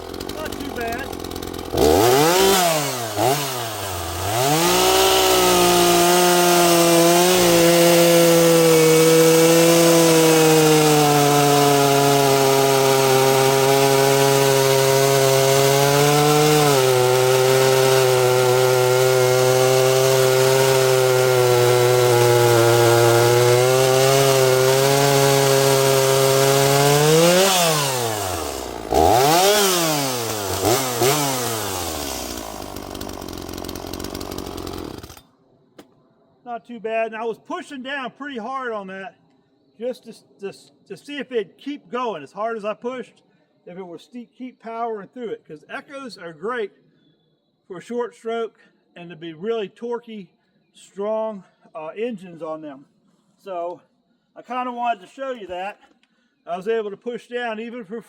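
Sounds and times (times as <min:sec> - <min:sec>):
chainsaw revving: 0:00.0 - 0:35.2
chainsaw cutting through log: 0:00.0 - 0:35.3.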